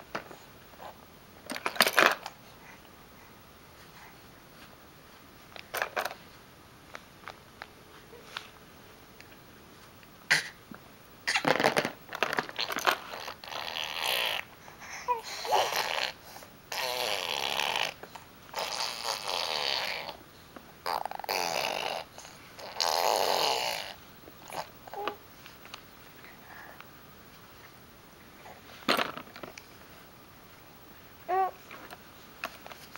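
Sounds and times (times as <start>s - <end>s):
baby blowing raspberries: 15.2s - 18.0s, 20.9s - 24.7s.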